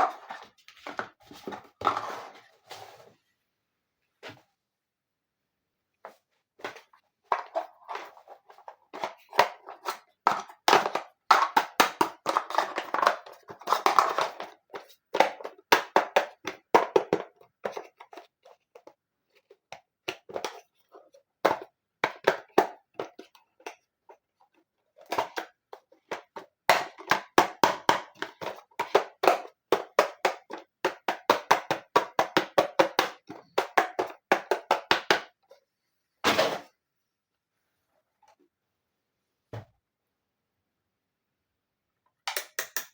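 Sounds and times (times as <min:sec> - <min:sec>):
plastic pieces clicking and tapping: 0:08.9 - 0:19.4, 0:42.3 - 0:42.9.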